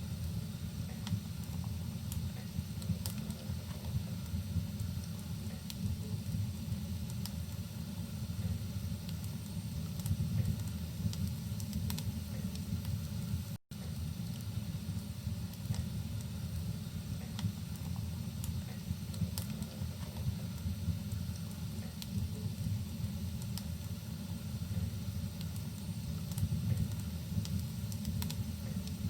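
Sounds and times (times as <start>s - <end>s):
fire crackling in a fireplace: 0.0s - 29.0s.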